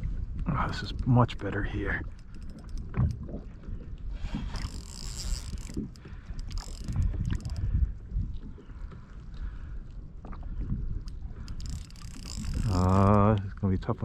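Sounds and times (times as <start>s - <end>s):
water sloshing against hull: 0.0s - 14.0s
wind on microphone: 0.0s - 14.0s
light mechanical clicks: 11.0s - 13.5s.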